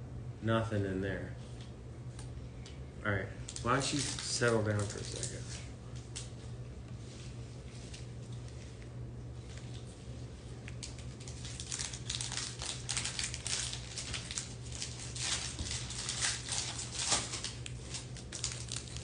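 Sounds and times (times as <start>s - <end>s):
steady low hum: 0.0s - 19.0s
card wrappers crinkling: 3.4s - 6.4s, 10.5s - 19.0s.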